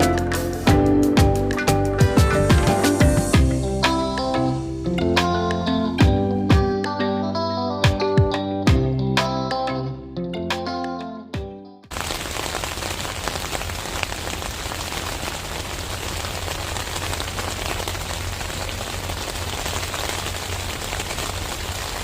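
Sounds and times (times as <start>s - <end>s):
rain falling: 11.9s - 22.0s.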